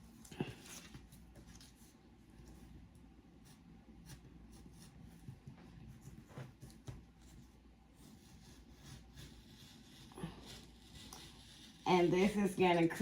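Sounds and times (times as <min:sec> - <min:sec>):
scissors cutting paper: 0:08.1 - 0:12.9.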